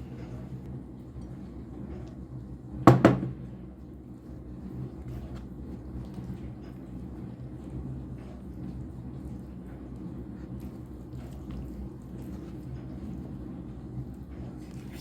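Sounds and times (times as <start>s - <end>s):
sharp knocks: 2.9s - 3.4s.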